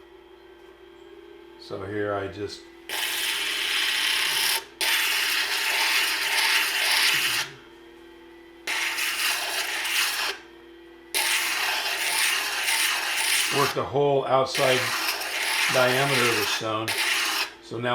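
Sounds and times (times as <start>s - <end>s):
grinding machine hum: 1.6s - 7.8s, 8.7s - 17.9s
stone grinding on a disc: 2.9s - 7.6s, 8.7s - 10.4s, 11.1s - 13.9s, 14.5s - 17.7s.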